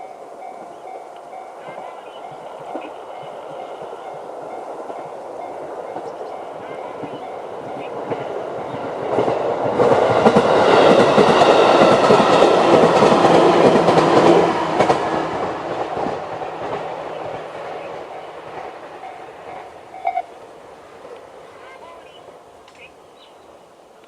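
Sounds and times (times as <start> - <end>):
train wheels clattering over rail joints: 2.6 - 20.3.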